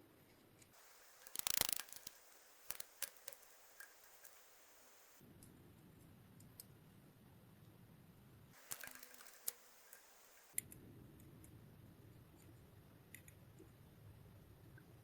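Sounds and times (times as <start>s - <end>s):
small hard parts rattling: 0.8s - 5.0s, 8.6s - 10.5s
small parts clicking: 0.8s - 5.2s, 8.6s - 10.7s.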